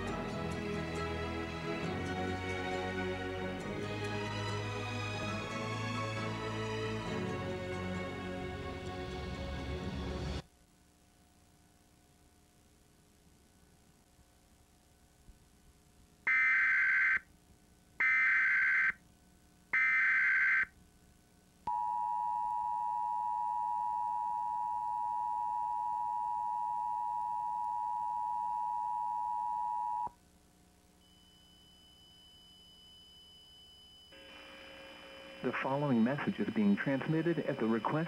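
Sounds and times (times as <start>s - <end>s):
warbling data tones: 31.3s - 38.0s.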